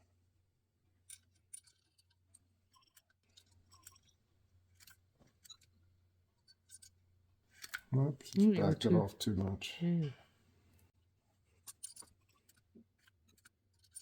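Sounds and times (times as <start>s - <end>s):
small metallic clicks and ticks: 1.0s - 8.4s, 11.6s - 14.0s.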